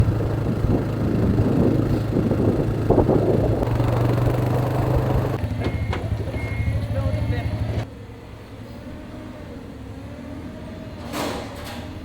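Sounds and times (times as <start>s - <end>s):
motor humming: 0.0s - 7.8s.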